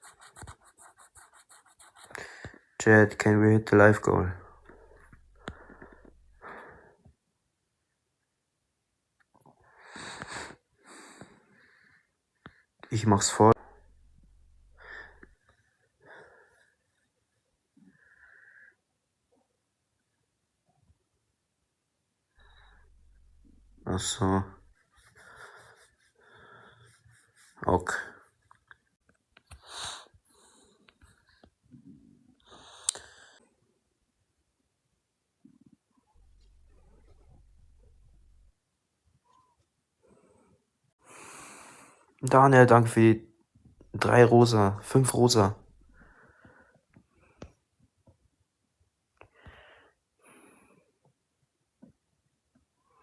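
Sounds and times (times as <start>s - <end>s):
person breathing close: 4.3s - 7.0s, 13.5s - 15.4s, 22.4s - 28.3s.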